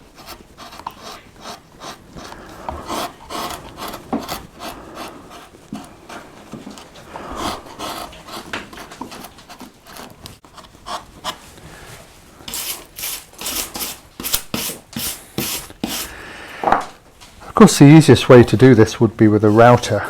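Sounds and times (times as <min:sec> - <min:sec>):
gouge scraping wood: 0:00.0 - 0:11.6, 0:12.5 - 0:16.2.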